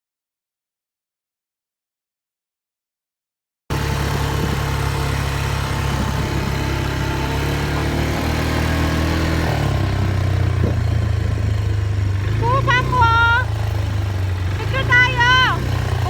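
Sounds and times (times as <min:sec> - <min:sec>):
atv engine running: 0:03.7 - 0:16.0.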